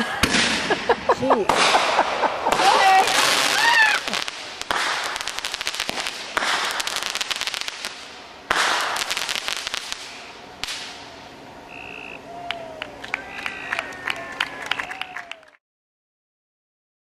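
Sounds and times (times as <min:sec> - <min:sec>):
sharp firework crack: 0:00.0 - 0:11.4
fireworks crackling pops: 0:00.2 - 0:11.4.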